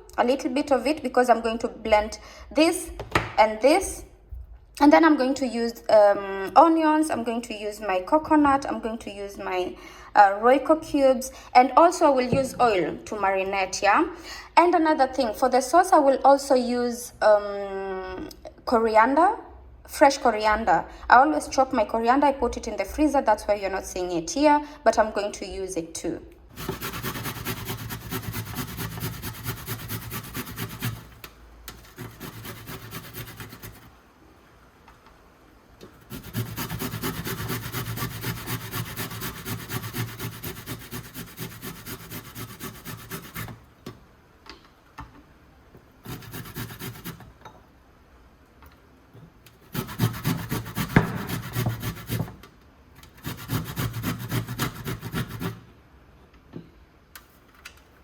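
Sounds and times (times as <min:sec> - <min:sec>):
food rasping on hand grater: 0:26.5 - 0:33.9, 0:36.0 - 0:43.6, 0:46.0 - 0:47.3, 0:49.7 - 0:52.3, 0:53.2 - 0:55.6.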